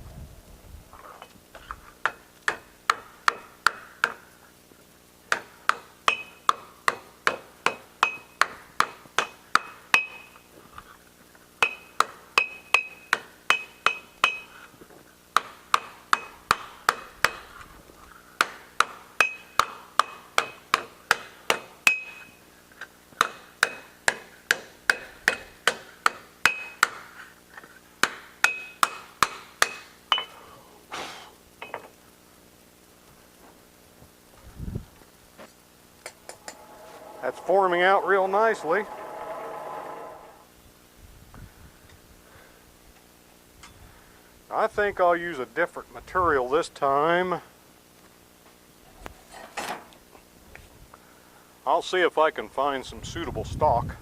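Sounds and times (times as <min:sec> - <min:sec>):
hammer striking steel: 0:36.0 - 0:40.5.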